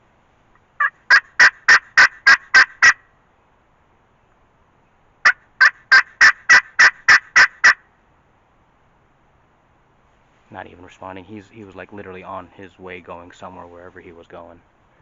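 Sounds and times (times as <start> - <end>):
turkey call hen yelps: 0.8 - 3.0, 5.2 - 7.8.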